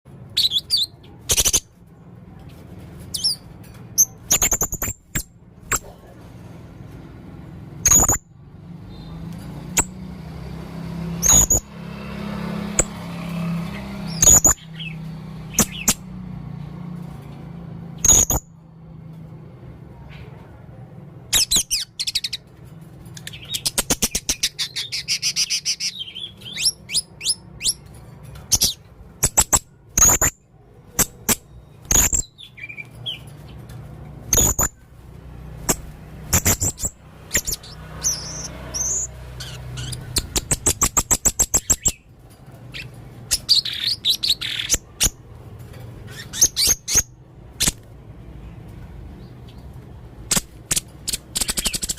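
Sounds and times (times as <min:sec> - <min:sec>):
parrot chirping: 0:00.2 - 0:01.8, 0:03.0 - 0:06.0, 0:07.8 - 0:08.3, 0:08.9 - 0:16.2, 0:17.9 - 0:18.6, 0:21.3 - 0:33.6, 0:34.2 - 0:34.9, 0:35.5 - 0:45.3, 0:46.0 - 0:47.8, 0:50.2 - 0:51.9.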